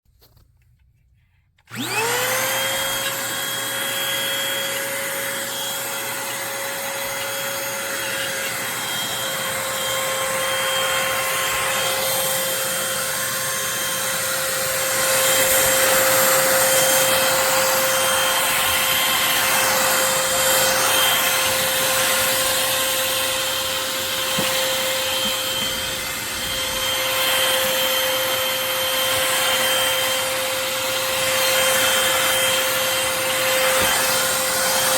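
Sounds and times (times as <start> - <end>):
vacuum cleaner motor whine: 1.6 - 34.9.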